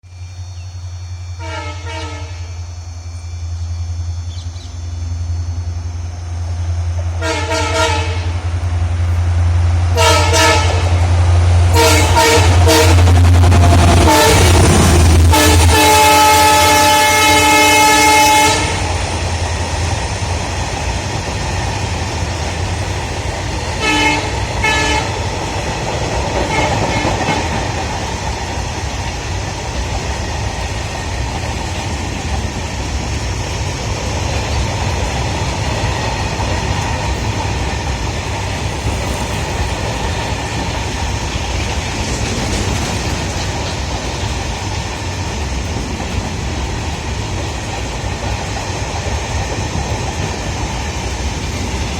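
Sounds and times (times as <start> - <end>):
locomotive horn blasts: 1.3 - 2.8, 7.2 - 8.4, 10.0 - 11.0, 11.7 - 18.9, 23.8 - 25.2, 26.5 - 27.6
freight wagons rolling on rails: 18.5 - 51.9.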